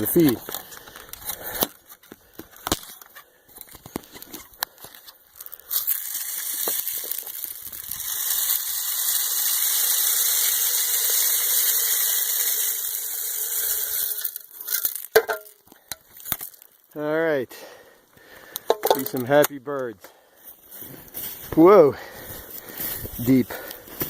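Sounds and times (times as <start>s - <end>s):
handling clicks and rustles: 0.0s - 8.8s, 18.5s - 20.0s
birdseed pouring into feeder: 5.4s - 15.6s.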